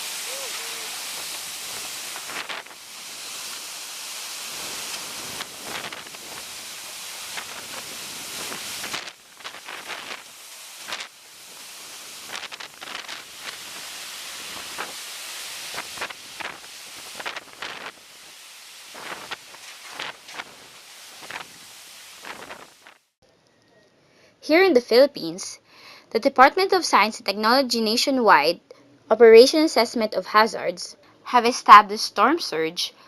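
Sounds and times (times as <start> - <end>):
storm wind gusts: 0.0 - 22.9
rushing water splashing: 0.0 - 23.0.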